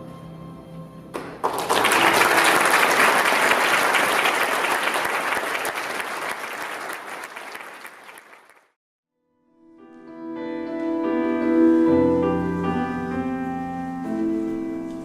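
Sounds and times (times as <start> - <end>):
crowd applauding: 1.2 - 8.8.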